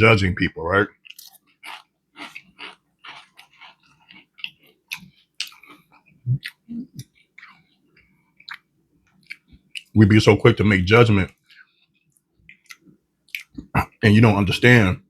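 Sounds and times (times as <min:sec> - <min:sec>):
close chewing with wet smacks: 0:01.0 - 0:10.0, 0:11.3 - 0:13.8.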